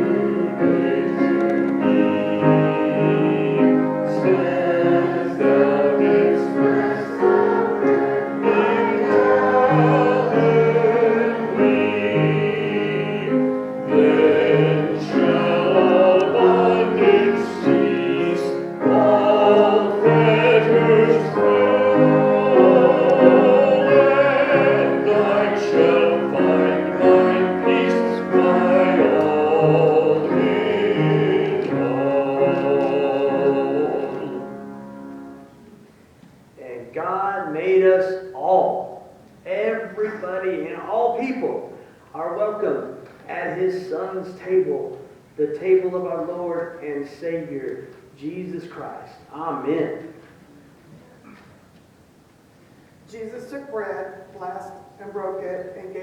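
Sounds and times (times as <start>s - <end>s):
choir singing a hymn: 0.0s - 35.8s
instrumental accompaniment: 0.0s - 36.2s.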